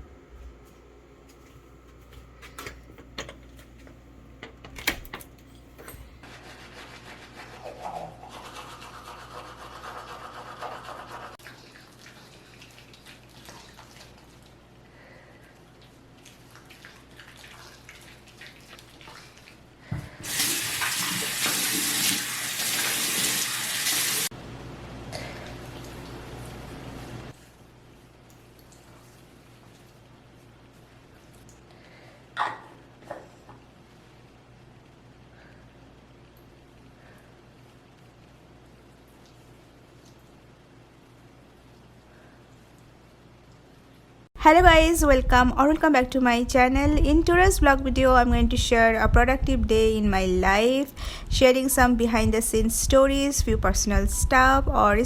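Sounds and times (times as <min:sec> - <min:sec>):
water running hard: 0:20.2 - 0:24.3.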